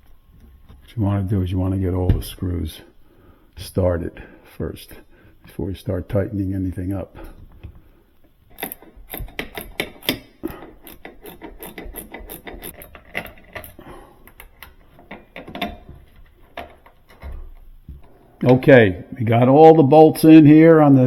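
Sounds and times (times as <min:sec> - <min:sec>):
socket wrench clicking: 0:08.5 - 0:15.8.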